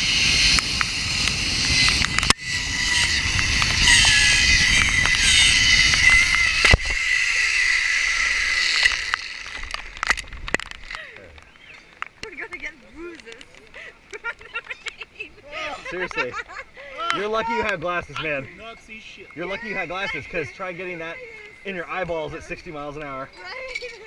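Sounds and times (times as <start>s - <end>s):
pulleys whining on steel cable: 0.0s - 10.1s
wind rush: 0.0s - 10.9s.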